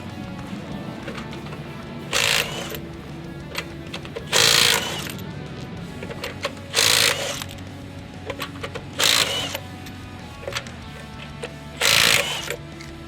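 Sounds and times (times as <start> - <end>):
background music: 0.0 - 13.0
impact wrench hammering: 2.1 - 2.8, 3.5 - 5.2, 6.0 - 7.6, 8.3 - 9.6, 11.4 - 12.7.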